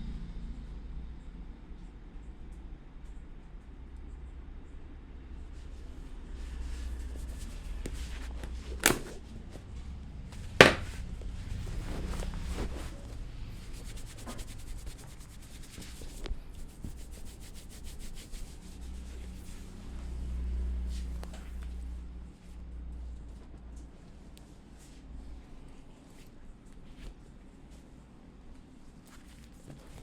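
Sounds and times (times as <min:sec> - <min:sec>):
hands rubbing skin and hair: 0:05.6 - 0:09.2, 0:10.6 - 0:19.6.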